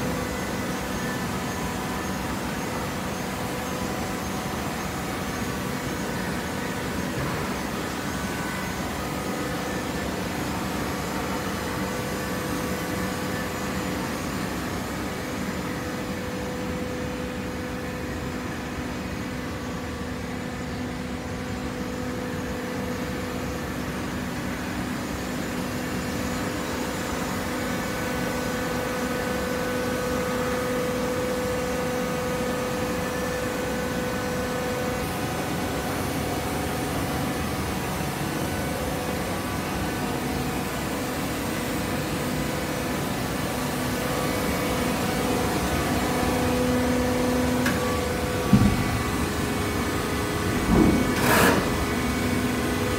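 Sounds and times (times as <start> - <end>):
hydraulic power unit hum: 0.0 - 52.9.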